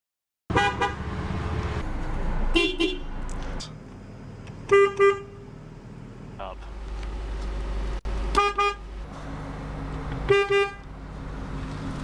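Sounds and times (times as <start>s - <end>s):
car horn toots: 0.5s - 1.0s, 2.5s - 3.2s, 4.6s - 5.5s, 8.3s - 8.8s, 10.2s - 10.8s.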